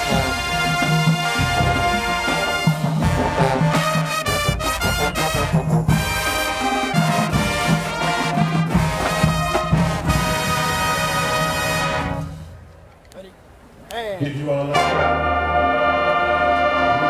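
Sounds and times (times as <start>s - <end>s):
trumpets and trombones: 0.0s - 12.6s, 14.6s - 17.0s
drums: 0.0s - 12.7s
marching band brass: 0.0s - 12.7s, 14.6s - 17.0s.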